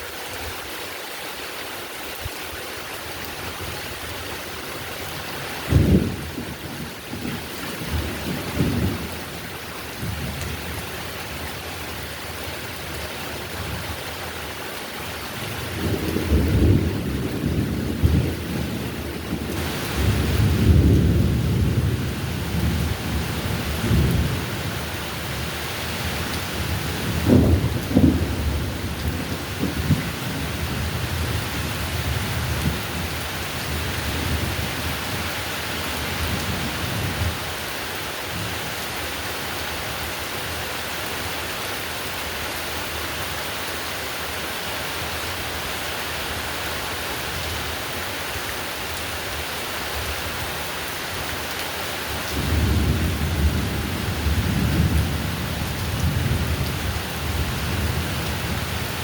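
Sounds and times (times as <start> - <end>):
heavy rain: 0.0 - 59.0
rolling thunder: 5.6 - 9.2, 15.7 - 24.8, 26.0 - 34.7, 52.3 - 58.7.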